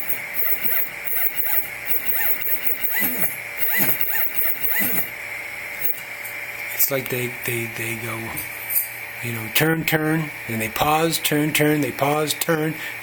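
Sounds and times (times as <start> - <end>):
stepper motors whining in pulses: 0.0 - 5.2
steady electrical hum: 0.0 - 13.0.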